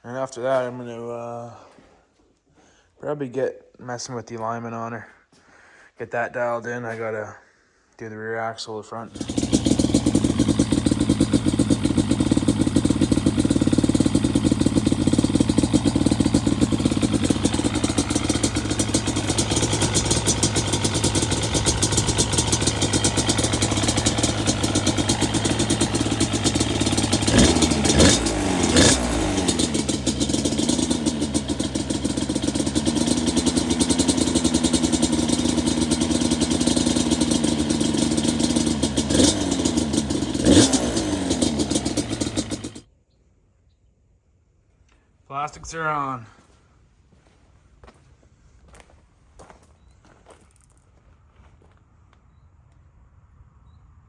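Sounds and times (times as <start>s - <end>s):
engine revving: 9.1s - 42.9s
two-stroke engine idling: 9.1s - 42.9s.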